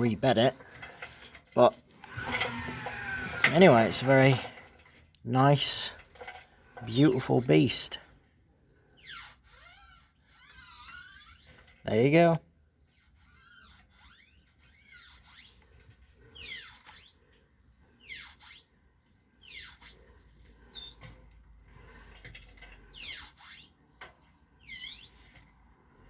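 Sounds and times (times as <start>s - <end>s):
washing machine squeaking: 1.6s - 6.0s, 8.8s - 12.2s, 12.9s - 17.3s, 24.6s - 25.3s.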